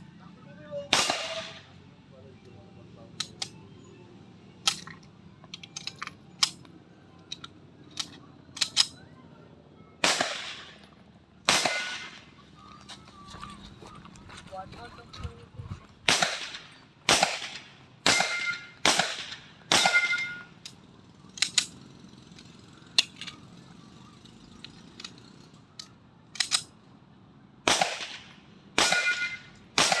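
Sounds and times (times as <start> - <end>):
pistol shots with ringing tail: 0.9 - 1.7, 10.0 - 10.9, 11.5 - 12.4, 16.1 - 20.6, 27.7 - 30.0
quieter sharp cracks: 11.5 - 12.3, 16.1 - 20.4, 27.7 - 30.0.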